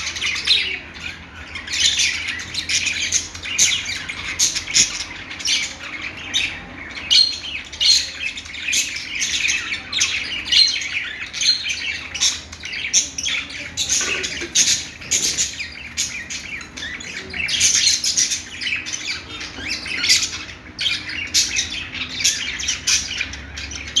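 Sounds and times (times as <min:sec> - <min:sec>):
budgies chirping: 0:00.0 - 0:24.0.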